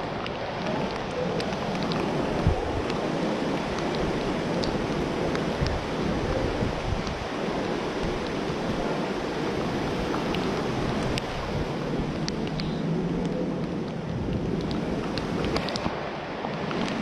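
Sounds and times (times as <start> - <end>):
storm wind rushing: 0.0 - 17.0
wind buffeting microphone: 0.0 - 17.0
faint ticks: 12.2 - 15.9.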